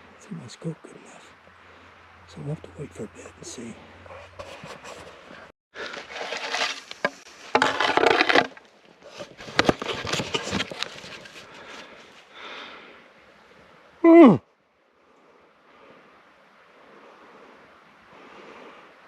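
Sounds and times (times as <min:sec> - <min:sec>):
gear and clothing rustling: 0:09.0 - 0:12.3
loud grunt-like call: 0:14.0 - 0:14.4.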